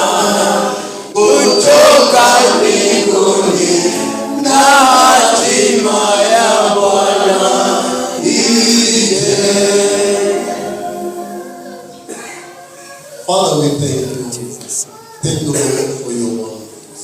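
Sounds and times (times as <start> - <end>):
choir singing slow worship song: 0.0 - 12.4.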